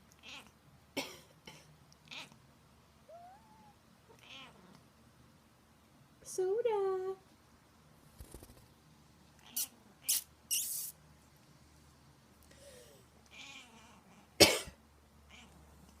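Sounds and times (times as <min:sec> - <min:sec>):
cat meowing faintly: 0:03.1 - 0:04.8, 0:13.3 - 0:14.3
person mock coughing: 0:14.4 - 0:14.8.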